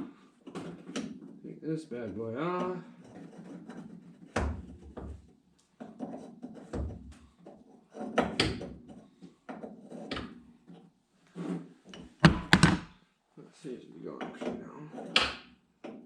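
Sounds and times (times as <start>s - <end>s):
hand tools knocking on metal: 12.2s - 12.9s.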